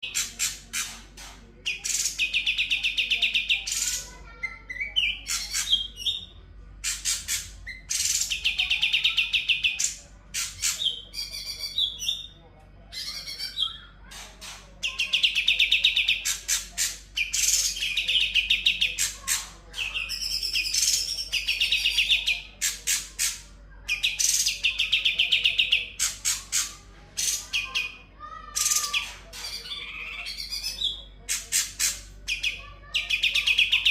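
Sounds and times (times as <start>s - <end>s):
bird mimicking other birds: 0.0s - 12.3s.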